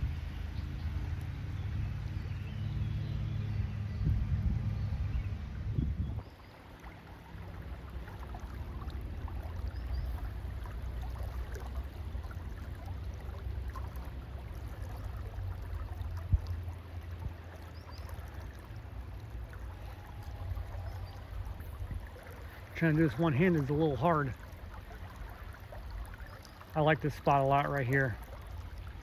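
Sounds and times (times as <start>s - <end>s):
low microphone rumble: 0.0s - 6.3s
flowing river water: 0.0s - 29.0s.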